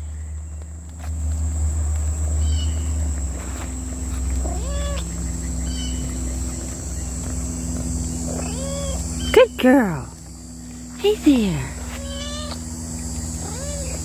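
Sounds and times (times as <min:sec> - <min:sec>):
steady low hum: 0:00.0 - 0:14.0
cat meowing: 0:04.5 - 0:05.1, 0:08.4 - 0:09.0, 0:11.9 - 0:12.6, 0:13.4 - 0:14.0.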